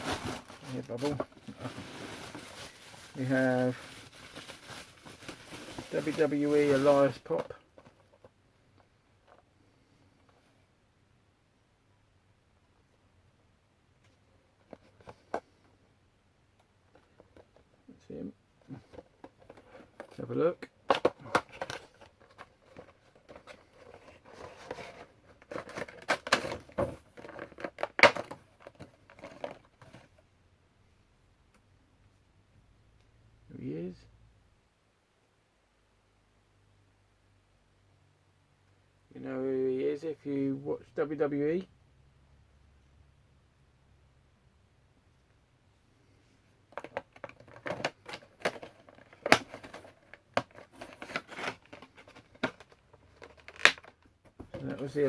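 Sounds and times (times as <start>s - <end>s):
packaging rustling and crinkling: 0.0s - 8.3s, 18.8s - 30.1s, 46.7s - 55.0s.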